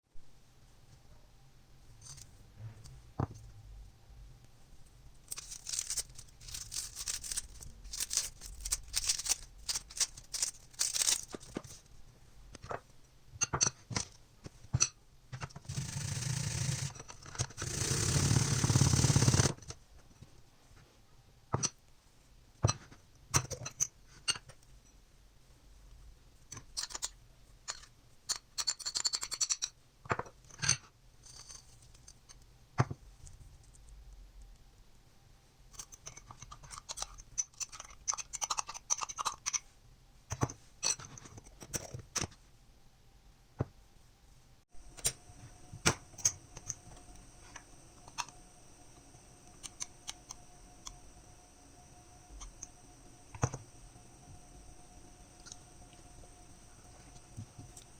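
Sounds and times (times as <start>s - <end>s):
faint steady hum: 0.1s - 29.0s, 29.8s - 57.9s
rustling or crinkling: 4.8s - 12.0s
utensils and containers clicking: 5.2s - 11.8s, 26.5s - 29.8s, 35.7s - 39.6s, 44.8s - 57.9s.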